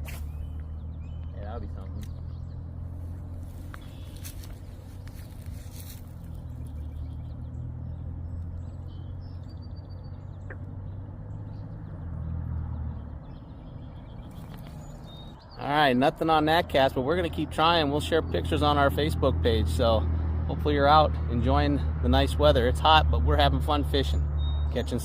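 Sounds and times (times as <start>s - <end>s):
faint birds chirping: 0.0s - 25.0s.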